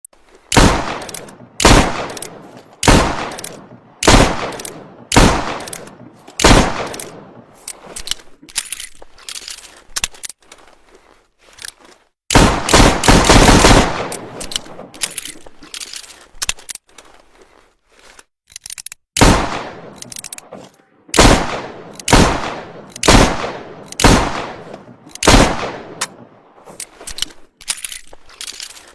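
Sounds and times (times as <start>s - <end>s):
metallic clicks: 0.5s - 4.9s, 5.5s - 10.7s, 14.0s - 17.2s, 18.0s - 19.2s, 19.8s - 20.8s, 21.8s - 22.2s, 22.8s - 23.1s, 23.7s - 25.4s, 26.0s - 28.9s.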